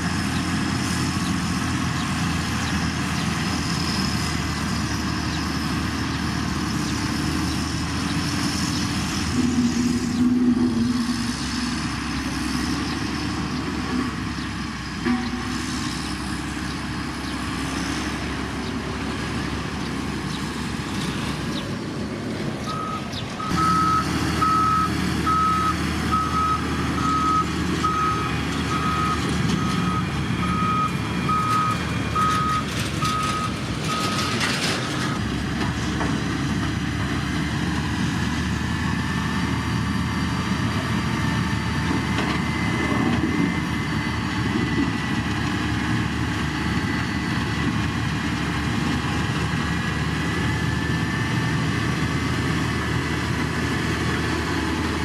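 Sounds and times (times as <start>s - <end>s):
construction machinery engine running: 0.0s - 55.0s
reversing alarm beeping: 22.7s - 35.3s.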